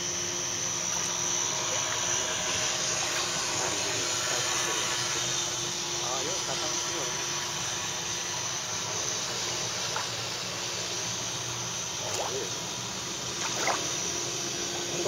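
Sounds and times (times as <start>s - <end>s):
thin high whine: 0.0s - 15.0s
water noise on lake: 12.0s - 12.6s, 13.3s - 13.9s.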